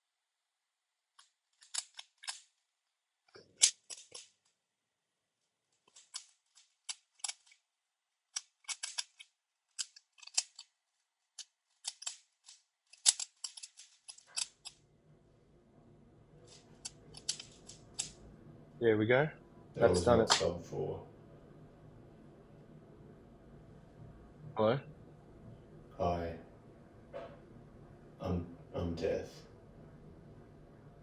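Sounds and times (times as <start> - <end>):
puzzle cube plastic clicks: 1.2 - 2.6, 3.4 - 4.4, 5.8 - 7.6, 8.3 - 14.8, 16.5 - 18.2.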